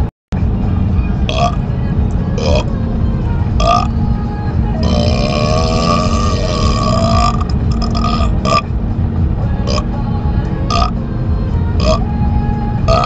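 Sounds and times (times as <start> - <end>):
car road rumble: 0.0 - 13.0
man burping: 4.9 - 8.6.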